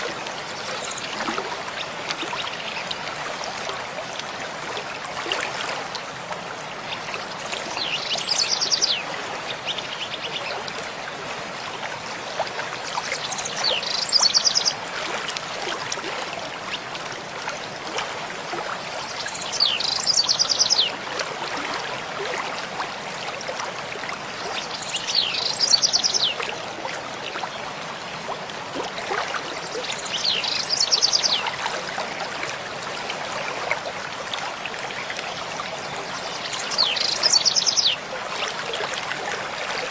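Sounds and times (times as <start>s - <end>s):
stream running over stones: 0.0s - 39.9s
songbird singing with trill: 7.8s - 9.0s, 19.2s - 20.9s, 24.8s - 26.4s, 29.9s - 31.4s, 36.4s - 38.0s.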